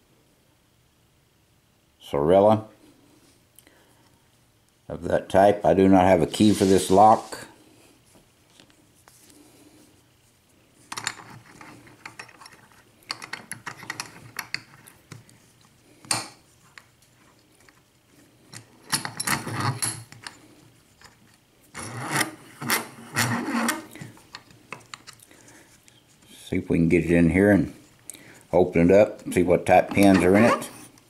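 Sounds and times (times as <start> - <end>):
lock and metal tools rattling: 10.9 - 14.9, 18.5 - 20.4.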